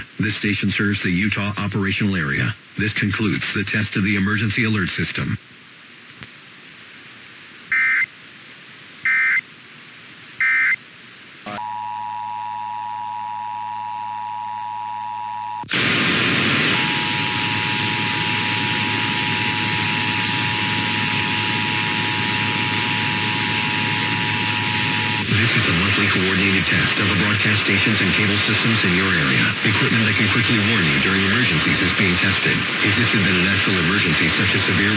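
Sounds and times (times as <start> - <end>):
radio hiss: 0.0 - 11.8, 15.1 - 34.9
low hum: 10.9 - 28.8
two-tone attention signal: 11.5 - 15.6
steady tone: 11.5 - 27.6.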